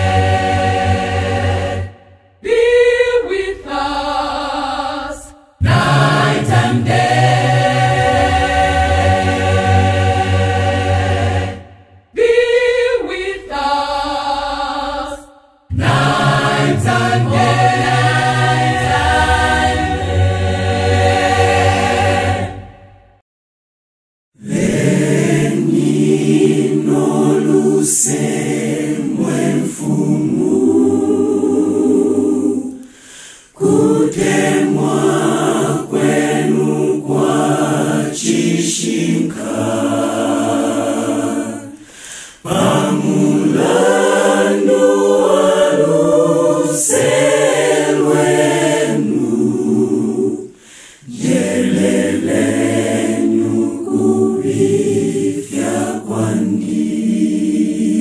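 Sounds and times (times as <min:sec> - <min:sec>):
choir singing a cappella hymn: 0:00.0 - 0:23.2, 0:24.4 - 0:58.0
singers breathing: 0:32.8 - 0:33.6, 0:41.8 - 0:42.5, 0:50.5 - 0:51.1.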